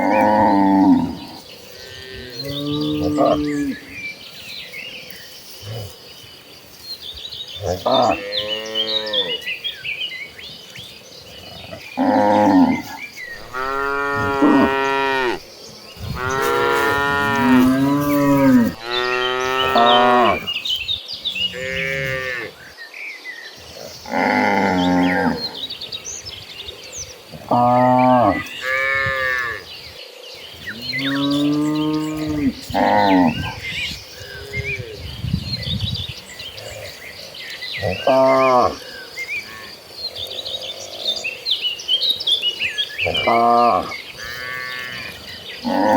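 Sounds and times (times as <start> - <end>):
birds chirping: 0.0 - 45.9
cattle mooing: 12.0 - 15.4, 16.0 - 20.5.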